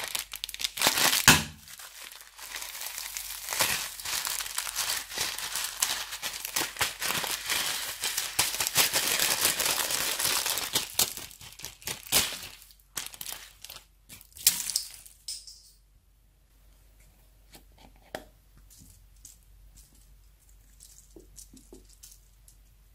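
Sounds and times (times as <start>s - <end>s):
crunchy slime crackling and popping: 0.0s - 14.9s.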